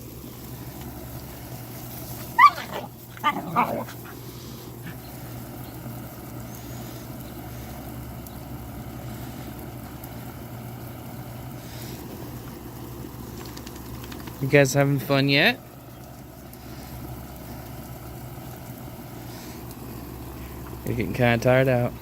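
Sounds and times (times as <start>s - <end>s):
steady low hum: 0.0s - 22.0s
puppies yipping: 2.2s - 4.2s.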